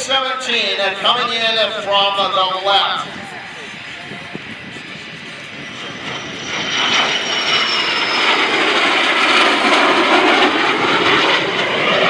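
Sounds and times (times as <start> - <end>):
jet engine roar: 0.0 - 12.0
high whine falling in pitch: 0.6 - 10.1.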